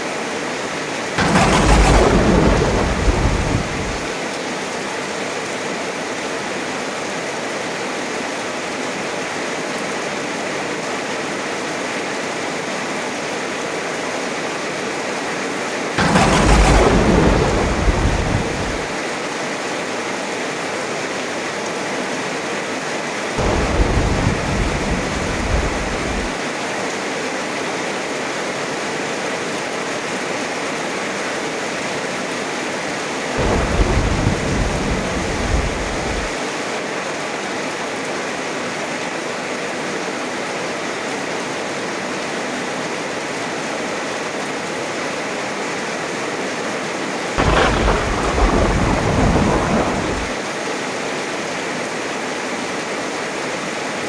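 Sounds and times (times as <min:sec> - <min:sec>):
heavy rain: 0:00.2 - 0:11.9, 0:15.7 - 0:19.7, 0:23.2 - 0:27.2, 0:31.2 - 0:39.2, 0:45.4 - 0:52.4
thunder: 0:01.2 - 0:04.2, 0:16.0 - 0:19.0, 0:23.4 - 0:26.4, 0:33.4 - 0:36.4, 0:47.4 - 0:50.4.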